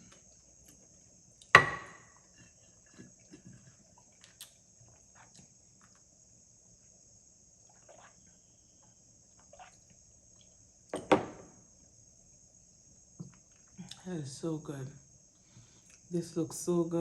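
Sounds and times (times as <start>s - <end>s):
high-pitched hiss: 6.2s - 17.0s.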